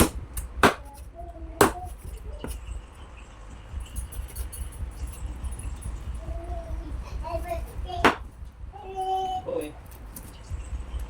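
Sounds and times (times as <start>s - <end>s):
blade chopping on wood: 0.0s - 1.0s, 1.6s - 2.0s.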